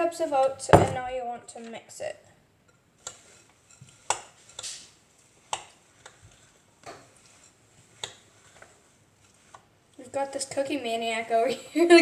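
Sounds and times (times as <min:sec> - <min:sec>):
spoon stirring thick mixture: 0:02.8 - 0:10.8.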